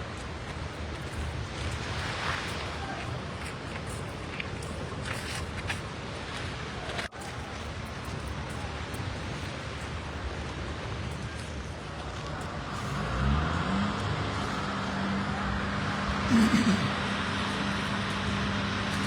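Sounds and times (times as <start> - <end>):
steady outdoor noise: 0.0 - 19.0
vehicle engine rising in pitch: 12.8 - 19.0.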